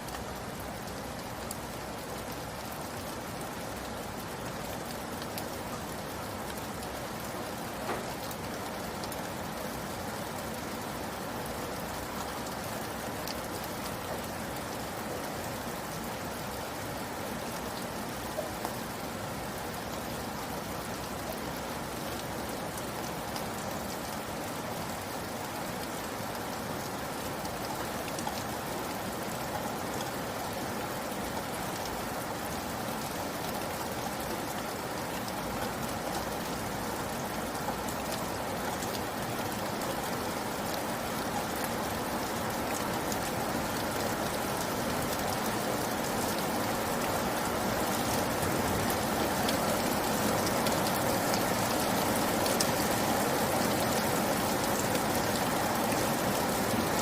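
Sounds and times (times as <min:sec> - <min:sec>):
raindrop ticks: 0:04.8 - 0:09.3.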